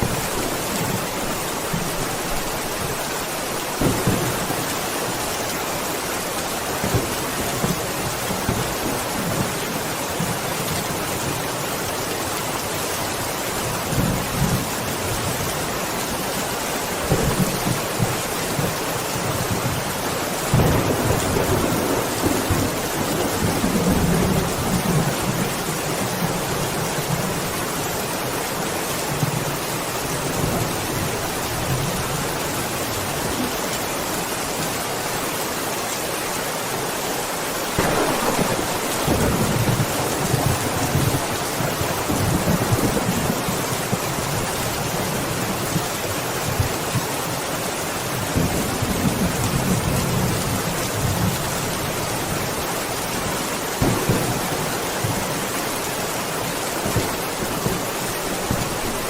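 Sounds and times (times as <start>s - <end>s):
steady rain: 0.0s - 59.0s
distant thunder rumbling: 3.8s - 4.8s, 37.8s - 44.1s, 53.8s - 55.5s.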